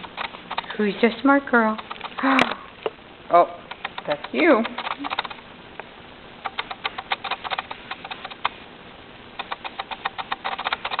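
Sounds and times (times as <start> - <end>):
puppy claws clicking on floor: 0.0 - 1.0, 1.6 - 2.5, 3.7 - 5.4, 6.4 - 8.6, 9.4 - 11.0.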